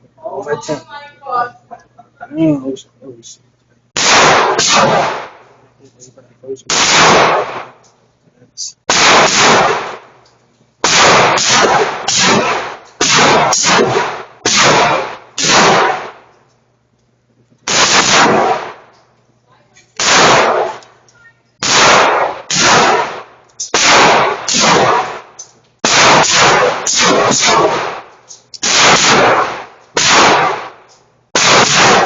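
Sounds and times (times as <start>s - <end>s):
gunshots with ringing tail: 4.0s - 5.5s, 6.7s - 7.8s, 8.9s - 10.2s, 10.8s - 16.3s, 17.7s - 18.9s, 20.0s - 20.8s, 21.6s - 32.0s.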